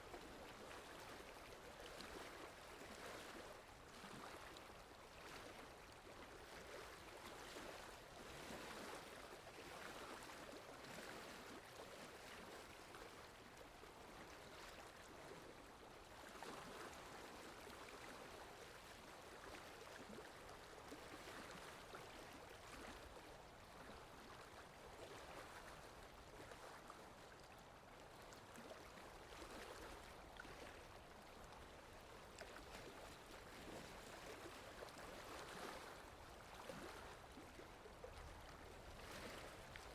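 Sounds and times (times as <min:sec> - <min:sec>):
water lapping: 0:00.0 - 0:39.9
wind: 0:00.0 - 0:39.9.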